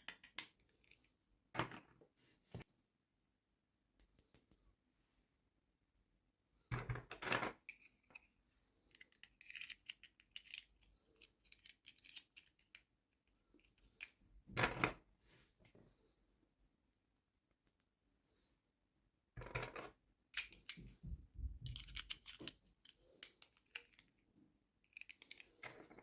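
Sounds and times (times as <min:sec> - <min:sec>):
small crinkles and clicks: 0:07.7 - 0:12.9, 0:21.6 - 0:24.2, 0:24.8 - 0:26.0.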